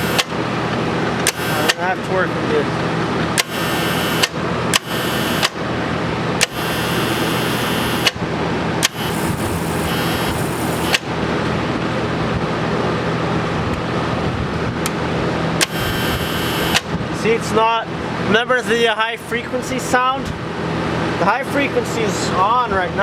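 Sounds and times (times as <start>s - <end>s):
sharp relay clicks: 0.0s - 0.4s, 1.2s - 1.9s, 3.4s - 5.6s, 6.4s - 8.2s, 8.8s - 11.1s, 15.6s - 16.9s
welder humming: 0.0s - 2.4s, 3.1s - 11.2s, 15.6s - 17.0s.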